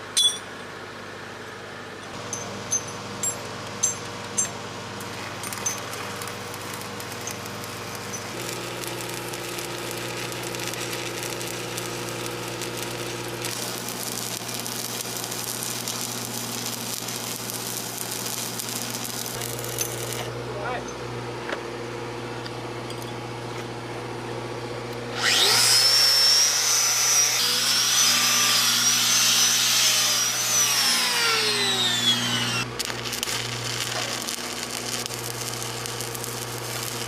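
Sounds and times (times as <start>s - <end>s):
engine humming: 0.0s - 25.1s, 31.1s - 37.0s
arc welding crackling: 5.0s - 20.8s, 25.1s - 37.0s.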